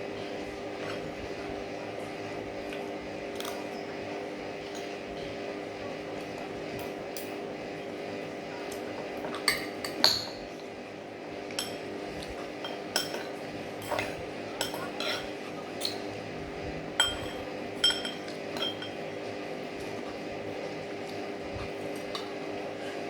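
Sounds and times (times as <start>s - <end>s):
steady low hum: 0.0s - 23.0s
cutlery clinking against plates: 9.2s - 10.6s, 11.5s - 16.2s, 17.0s - 19.1s.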